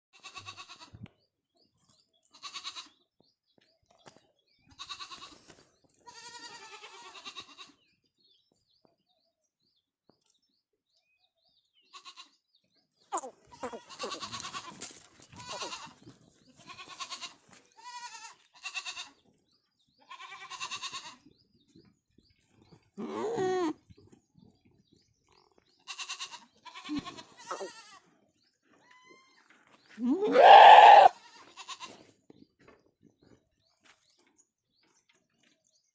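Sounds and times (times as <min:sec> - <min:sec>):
goats bleating: 0:06.0 - 0:07.8, 0:13.1 - 0:19.2, 0:20.1 - 0:21.2, 0:23.0 - 0:23.8, 0:25.9 - 0:28.1, 0:30.0 - 0:32.0.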